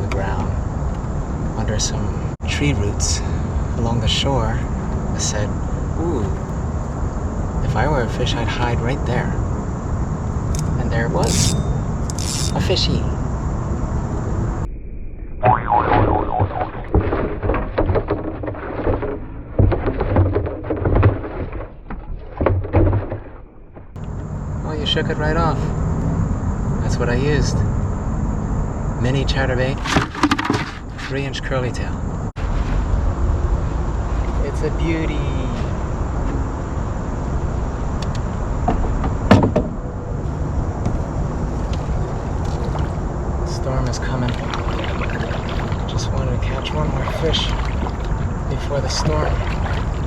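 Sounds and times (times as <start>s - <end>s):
fish thrashing in a boat: 16.9s - 23.6s, 44.2s - 50.0s.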